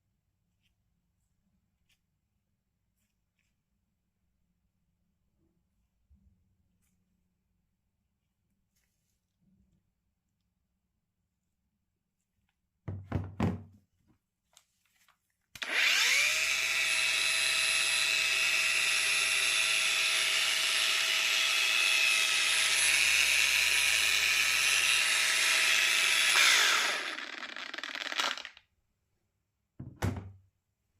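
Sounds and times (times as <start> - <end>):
angle grinder motor whine: 15.6 - 28.6.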